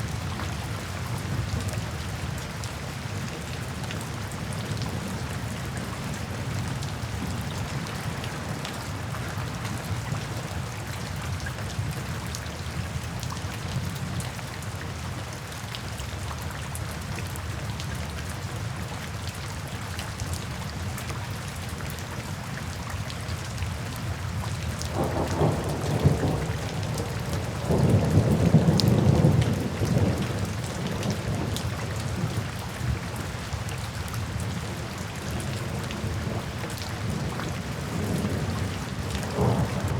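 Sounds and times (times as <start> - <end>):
steady rain falling: 0.0 - 39.9
thunder rumbling: 24.9 - 32.4, 35.7 - 39.9.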